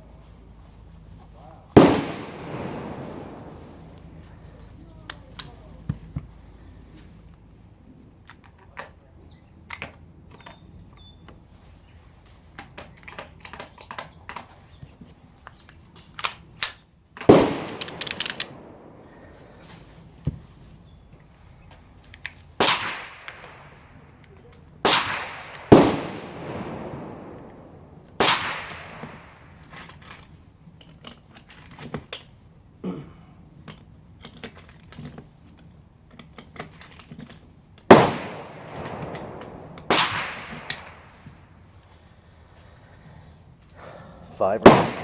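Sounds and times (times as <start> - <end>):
pistol gunshots: 1.8 - 3.6, 17.2 - 19.3, 22.6 - 23.8, 24.8 - 29.5, 37.9 - 41.2, 44.6 - 45.0
small clicks and knocks: 8.2 - 9.0, 9.6 - 11.4, 12.2 - 18.7, 21.1 - 22.5, 28.7 - 32.4, 33.6 - 37.9.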